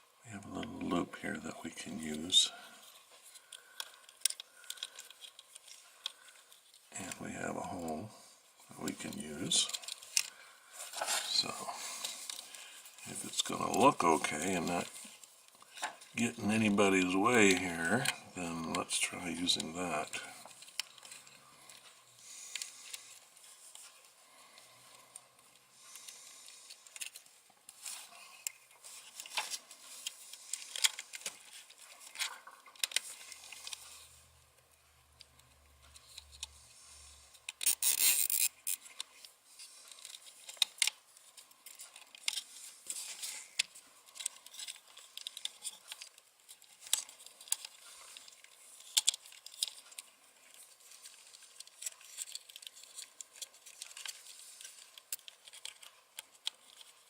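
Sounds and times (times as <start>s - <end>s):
plastic parts clicking and rustling: 0.4s - 57.0s
cable tie rasping: 37.4s - 57.0s.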